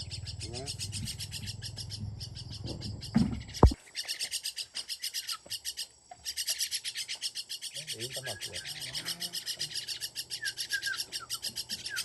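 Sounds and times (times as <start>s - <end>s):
low background rumble: 0.0s - 3.8s
high-pitched bird chirping: 0.0s - 12.0s.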